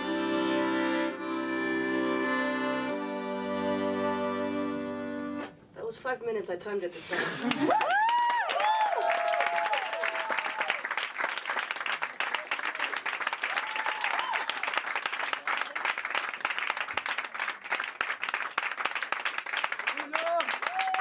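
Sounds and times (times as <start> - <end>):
audience applauding: 7.4 - 21.0.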